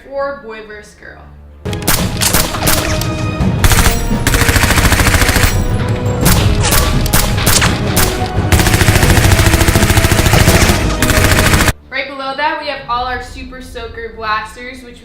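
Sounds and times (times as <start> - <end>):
background music: 0.0 - 15.0
machine-gun gunfire: 1.8 - 3.0, 3.6 - 11.8.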